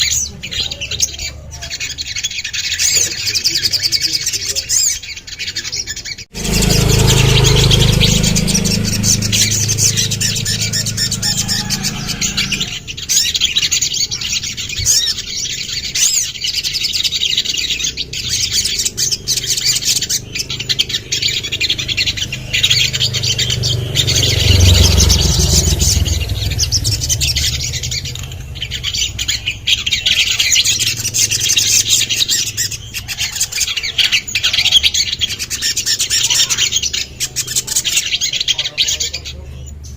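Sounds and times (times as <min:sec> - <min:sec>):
songbird chirping and trilling: 0:00.0 - 0:39.9
low rumble: 0:06.3 - 0:13.1, 0:21.4 - 0:31.4.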